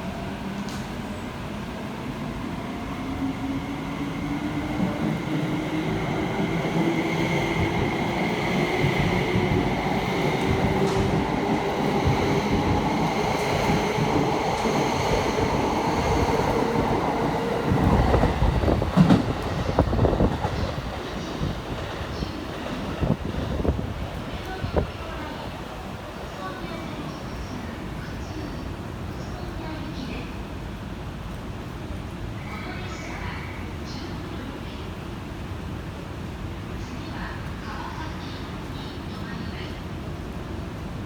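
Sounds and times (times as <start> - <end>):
train cars rumbling and knocking: 0.0 - 26.3
train rumble: 0.0 - 41.0.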